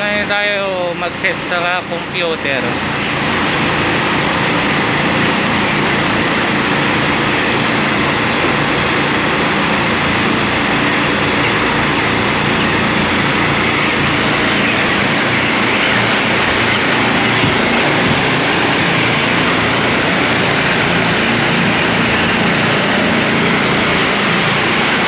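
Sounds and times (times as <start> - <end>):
low hum: 0.0 - 25.0
mechanical running noise: 0.0 - 25.0.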